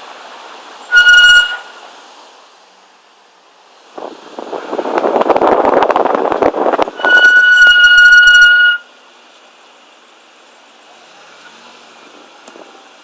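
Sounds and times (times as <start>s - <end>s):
car brakes scraping and squealing: 0.8s - 1.9s, 4.8s - 8.9s.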